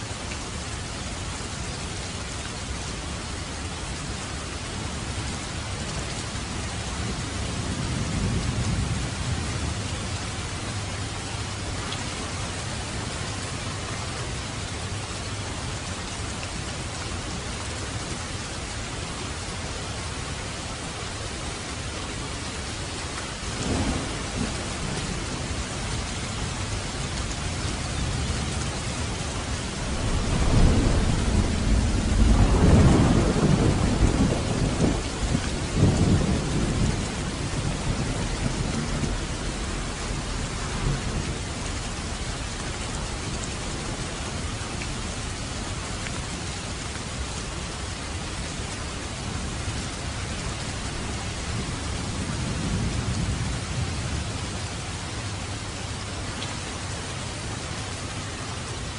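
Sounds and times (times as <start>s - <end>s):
steady rain hiss: 0.0s - 58.9s
thunder rumbling: 23.5s - 45.4s, 49.2s - 54.6s.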